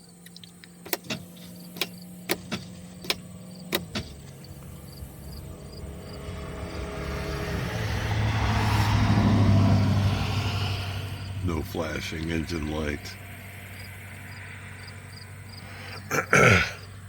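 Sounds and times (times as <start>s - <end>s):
low hum: 0.0s - 16.2s
ignition key switch clicking: 0.2s - 4.5s
broad noise: 0.8s - 17.0s.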